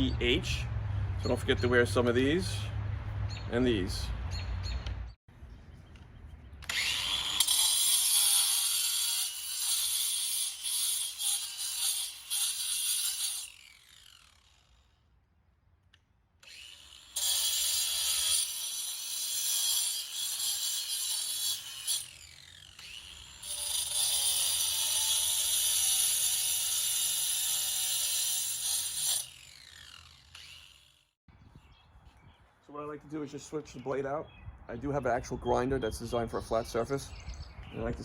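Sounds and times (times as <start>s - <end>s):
angle grinder grinding stone: 6.6s - 14.7s, 16.5s - 31.0s.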